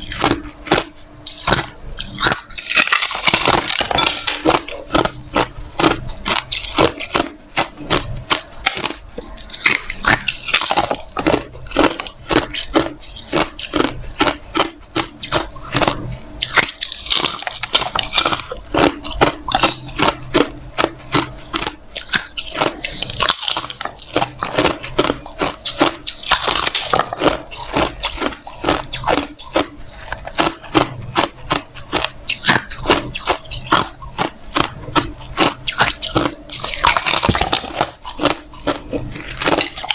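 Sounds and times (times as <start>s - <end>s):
ice being chewed: 0.0s - 39.9s.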